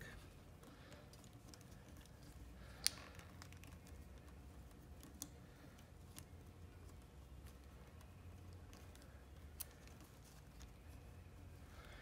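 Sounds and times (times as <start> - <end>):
faint low hum: 0.0 - 12.0
small parts clicking: 0.6 - 6.4, 7.4 - 10.8.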